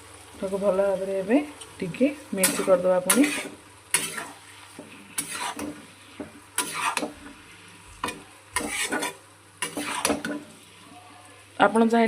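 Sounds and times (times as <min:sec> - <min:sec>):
low sizzle: 0:00.0 - 0:12.0
utensil scraping pan: 0:02.4 - 0:07.4, 0:08.0 - 0:10.6.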